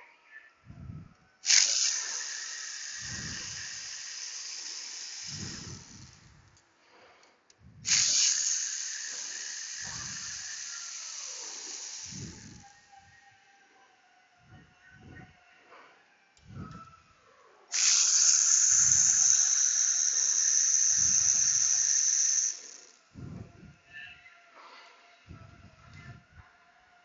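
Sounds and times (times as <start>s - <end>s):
pressurised spray hissing: 1.4s - 6.3s, 7.8s - 12.9s, 17.7s - 23.0s.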